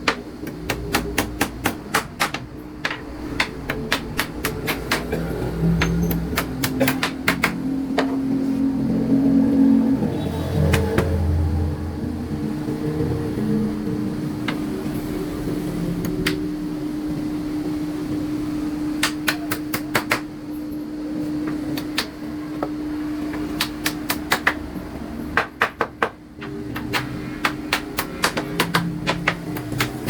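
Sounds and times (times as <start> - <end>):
sharp knocks: 0.0 - 7.6
steady hum: 0.0 - 25.4.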